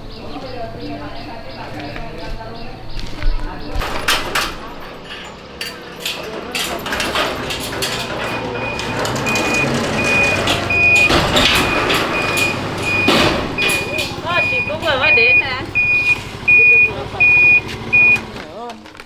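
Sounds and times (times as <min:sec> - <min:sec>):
scattered knocks: 0:06.4 - 0:18.4
reversing alarm beeping: 0:08.0 - 0:18.4
low engine hum: 0:08.1 - 0:18.6.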